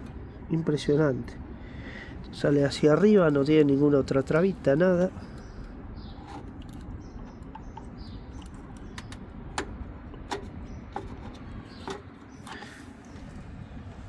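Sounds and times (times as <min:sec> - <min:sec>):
steady low hum: 0:00.0 - 0:14.0
graphics card clicks and knocks: 0:06.3 - 0:12.8.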